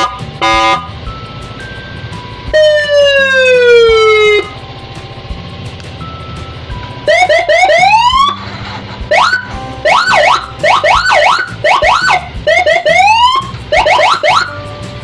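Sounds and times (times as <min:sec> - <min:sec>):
electronic siren whooping and yelping: 0:02.6 - 0:04.5, 0:07.1 - 0:08.4, 0:09.1 - 0:14.6.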